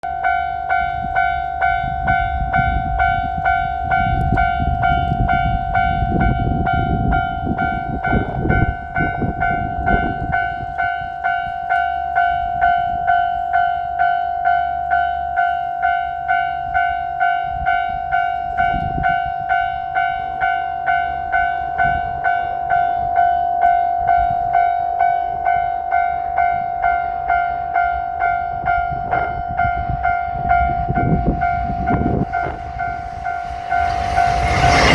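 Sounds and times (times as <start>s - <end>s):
level-crossing alarm ringing: 0.0s - 34.9s
low rumble: 30.0s - 34.9s.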